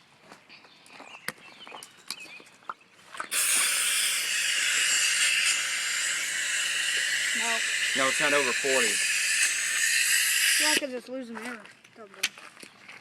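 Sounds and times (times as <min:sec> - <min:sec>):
compressed air hissing: 0:03.3 - 0:10.8.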